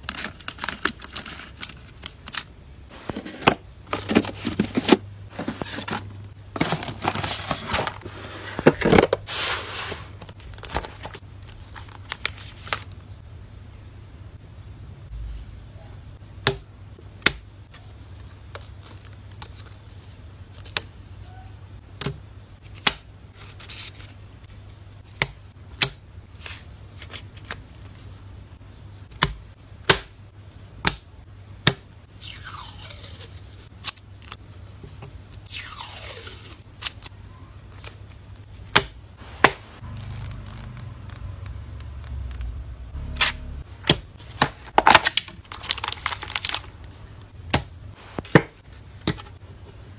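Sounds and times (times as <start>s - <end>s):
cards and plastic sleeves clicking: 39.4s - 42.6s, 43.2s - 47.3s.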